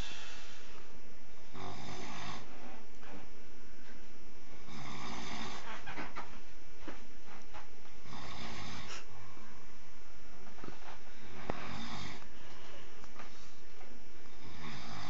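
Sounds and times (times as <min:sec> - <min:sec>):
man snoring heavily: 0:01.4 - 0:02.8, 0:04.5 - 0:05.7, 0:08.0 - 0:09.1, 0:11.2 - 0:12.2, 0:14.3 - 0:15.0.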